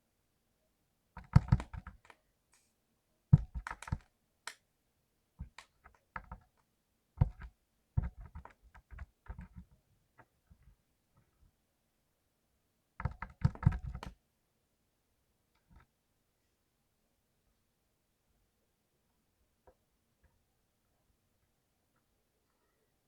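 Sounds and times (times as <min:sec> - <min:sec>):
mechanical keyboard typing: 0:01.2 - 0:02.2, 0:03.4 - 0:04.1, 0:05.4 - 0:06.6, 0:07.2 - 0:09.7, 0:13.0 - 0:14.1.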